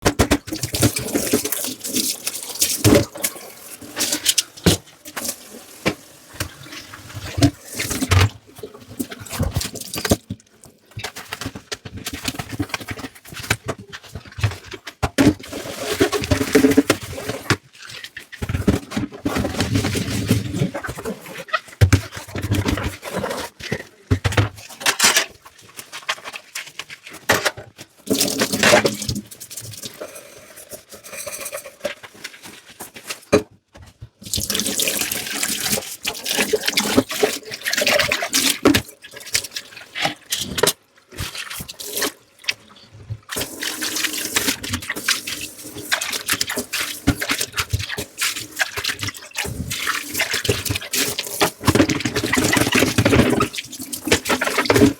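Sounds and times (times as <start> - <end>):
tap water splashing over dishes: 0.0 - 13.6, 34.2 - 54.9.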